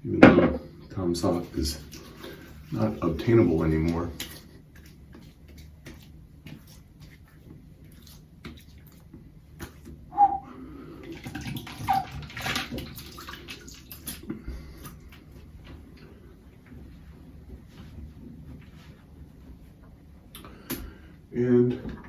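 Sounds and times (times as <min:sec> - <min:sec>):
wet splashing and slapping: 0:01.2 - 0:10.1, 0:11.0 - 0:16.1.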